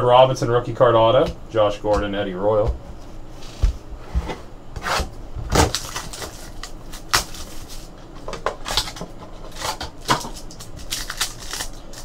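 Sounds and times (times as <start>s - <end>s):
trading cards and packaging handled: 5.6s - 12.0s.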